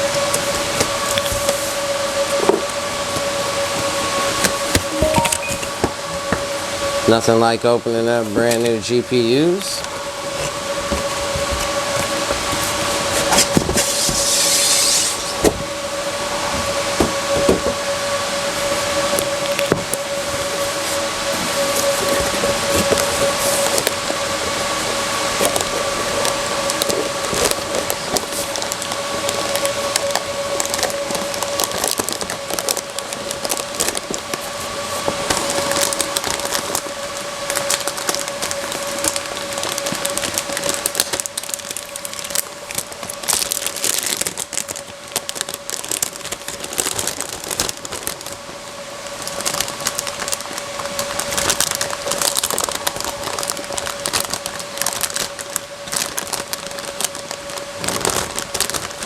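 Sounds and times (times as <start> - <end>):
steady hum: 3.3 - 13.0
packaging crinkling and tearing: 19.1 - 24.2, 25.2 - 59.0.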